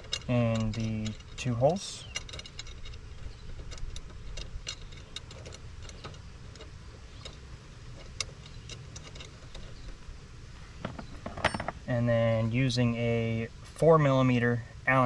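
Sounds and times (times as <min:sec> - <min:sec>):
metallic clicks of bolts: 0:00.0 - 0:10.0
low steady rumble: 0:00.0 - 0:15.0.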